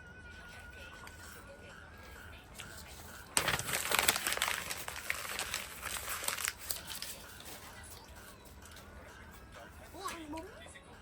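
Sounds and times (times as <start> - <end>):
packaging crinkling: 3.3 - 7.6.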